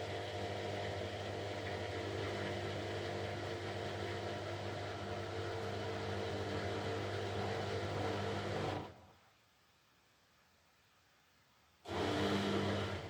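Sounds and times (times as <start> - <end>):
washing machine running: 0.0 - 9.0, 11.9 - 13.0.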